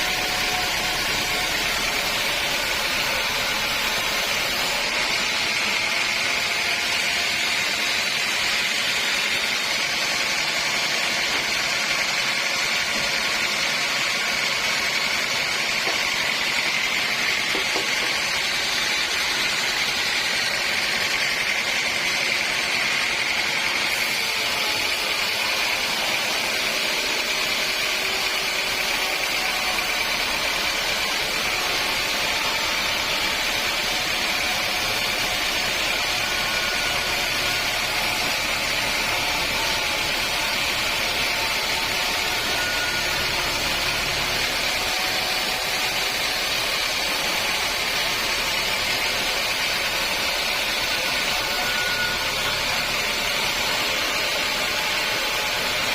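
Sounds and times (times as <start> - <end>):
high mechanical whine: 0.0 - 55.9
sawmill machinery running: 0.0 - 55.9.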